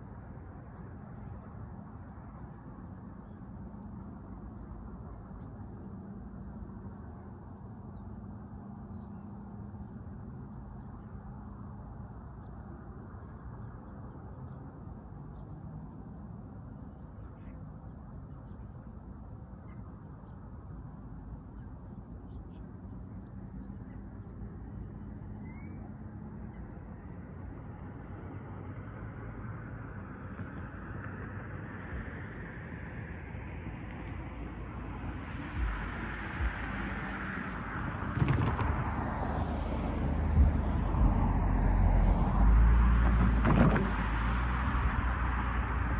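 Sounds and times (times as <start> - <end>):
low rumble of road traffic: 0.0 - 45.9
vehicle approaching: 25.4 - 45.9.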